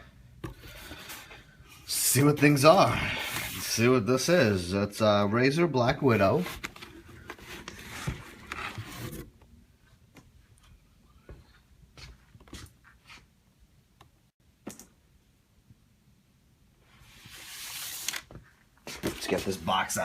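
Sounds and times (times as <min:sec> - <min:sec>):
cardboard packaging being handled: 0:06.3 - 0:09.4
sliding scrape: 0:16.9 - 0:18.3.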